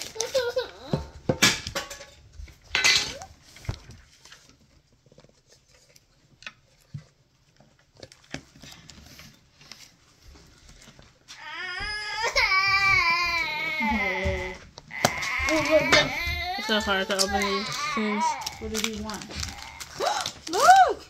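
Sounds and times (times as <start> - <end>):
packaging crinkling scrapes: 0.0 - 0.8, 7.5 - 11.3, 14.0 - 21.0.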